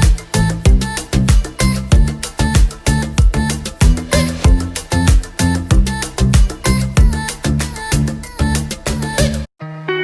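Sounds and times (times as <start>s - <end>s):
salsa music: 0.0s - 6.6s.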